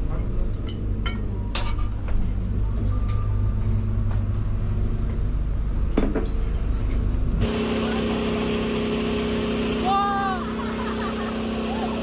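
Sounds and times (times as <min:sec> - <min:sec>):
boat engine rumbling: 0:04.4 - 0:12.0.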